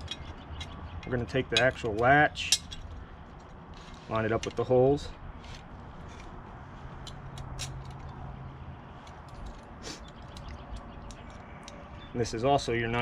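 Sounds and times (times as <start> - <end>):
metal hardware clicks and taps: 0.0 - 3.6.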